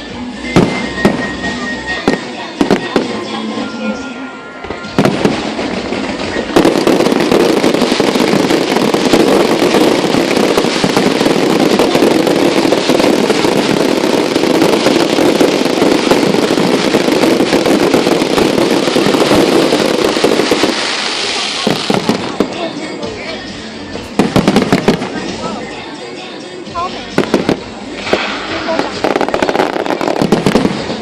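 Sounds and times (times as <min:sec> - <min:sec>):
fireworks bangs and crackles: 0:00.0 - 0:03.8, 0:04.6 - 0:31.0
sharp crack: 0:27.3 - 0:29.0.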